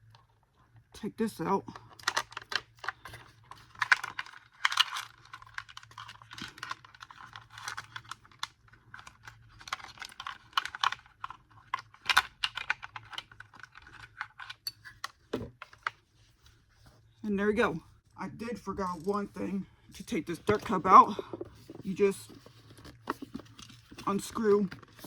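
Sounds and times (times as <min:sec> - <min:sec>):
plastic parts clicking and rattling: 0:01.8 - 0:16.4, 0:20.1 - 0:25.0.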